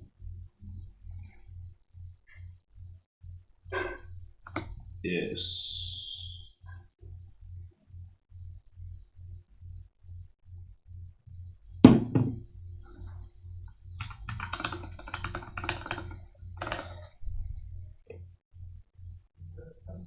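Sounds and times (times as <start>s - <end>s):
low repeating pulse: 0.0s - 20.0s
computer keyboard typing: 4.5s - 4.8s, 14.0s - 17.0s
loud thump: 11.8s - 12.4s.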